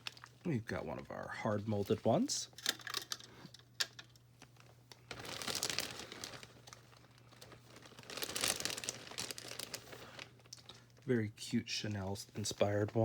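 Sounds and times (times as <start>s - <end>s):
plastic crinkling: 0.0s - 11.1s.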